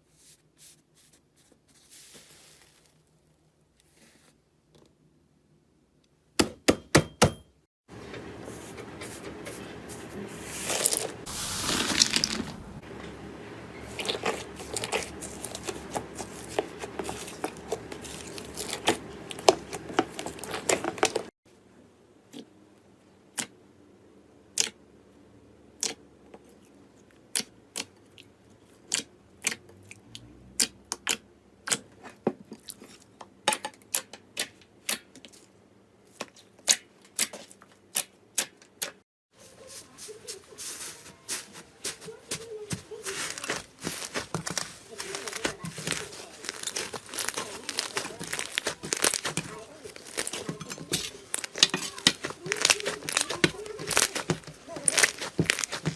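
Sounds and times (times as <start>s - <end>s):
slime clicking and popping: 52.2s - 55.8s.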